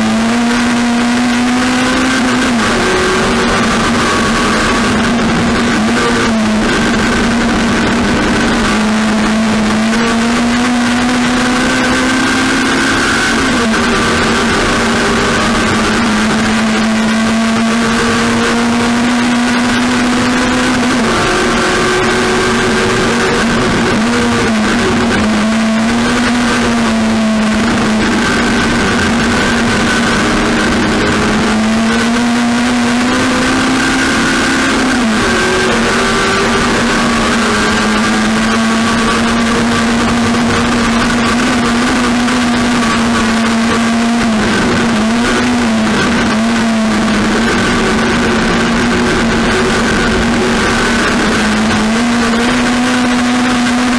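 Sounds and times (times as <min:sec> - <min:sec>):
race car engine revving: 0:00.0 - 0:53.9.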